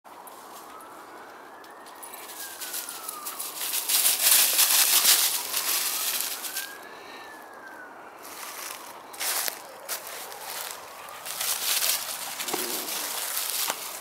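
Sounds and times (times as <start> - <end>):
siren wailing: 0.1 - 14.0
rustling crunching noise: 2.1 - 6.9, 8.2 - 14.0.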